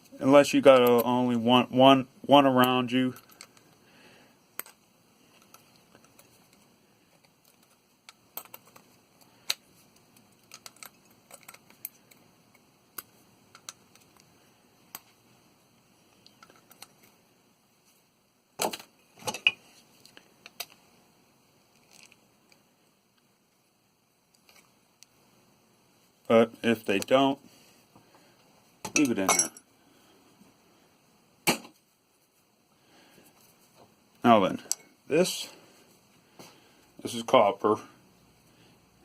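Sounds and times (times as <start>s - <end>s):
metal parts clicking and clinking: 7.4s - 8.8s, 10.2s - 12.2s.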